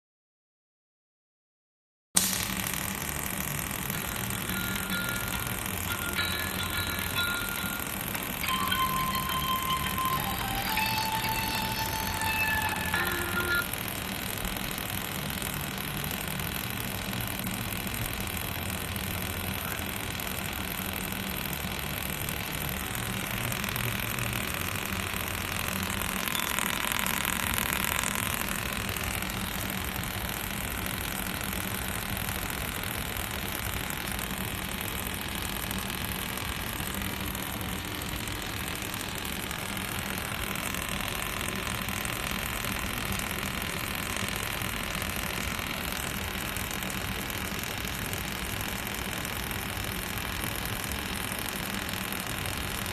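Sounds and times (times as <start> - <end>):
welding hiss: 2.2 - 16.3
laser welding machine hum: 2.2 - 52.9.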